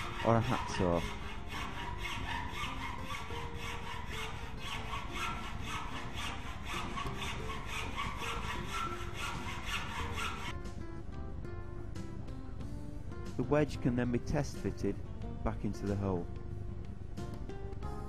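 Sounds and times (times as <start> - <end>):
hand saw cutting wood: 0.0 - 10.6.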